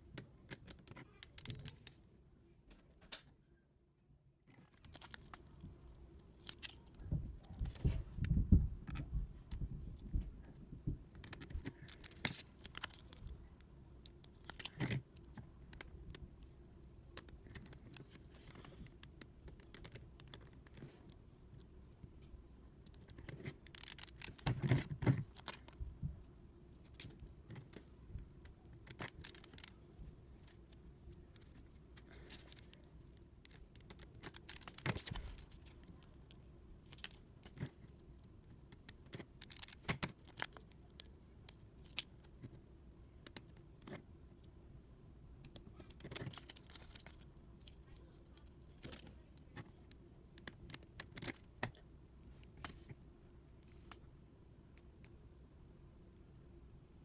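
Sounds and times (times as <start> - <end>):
hands handling plastic cube clicking: 0.1 - 2.0, 4.6 - 10.1, 11.0 - 16.5, 17.1 - 21.7, 22.8 - 25.8, 26.8 - 29.8, 30.4 - 42.6, 43.2 - 44.6, 45.4 - 52.9.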